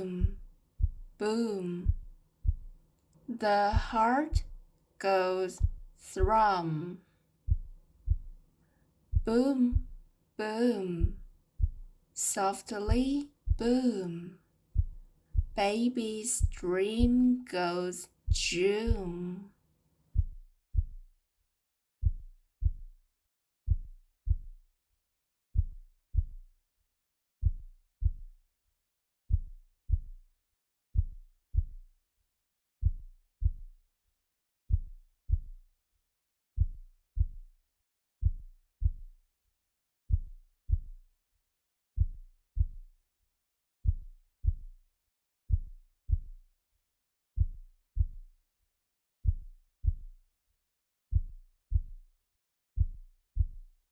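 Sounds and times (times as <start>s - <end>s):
heartbeat thumps: 0.0s - 8.4s, 9.1s - 17.5s, 18.3s - 19.4s.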